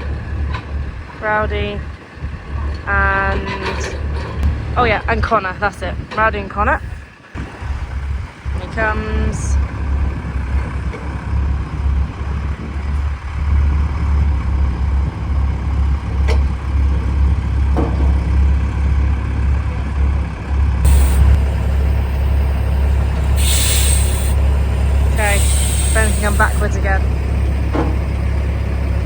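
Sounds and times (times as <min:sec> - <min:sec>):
diesel truck engine running: 0:00.0 - 0:29.0
air brake hiss: 0:20.9 - 0:26.8.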